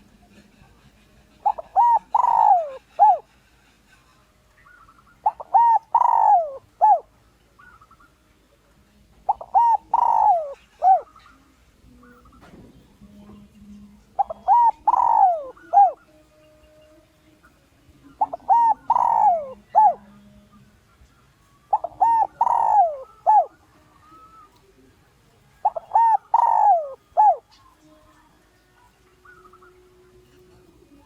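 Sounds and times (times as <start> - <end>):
dove cooing: 0.0 - 3.4, 4.6 - 8.2, 9.2 - 13.4, 14.1 - 17.0, 18.0 - 21.0, 21.7 - 24.8, 25.6 - 28.0, 28.8 - 31.0.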